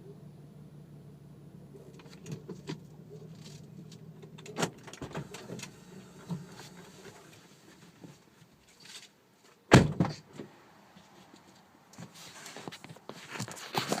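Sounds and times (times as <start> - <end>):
heavy thunk: 9.7 - 10.2.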